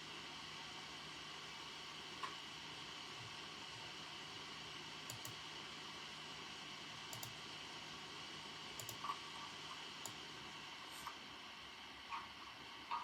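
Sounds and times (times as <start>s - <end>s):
computer keyboard keystrokes: 5.1s - 5.4s, 7.1s - 7.4s, 8.8s - 9.1s.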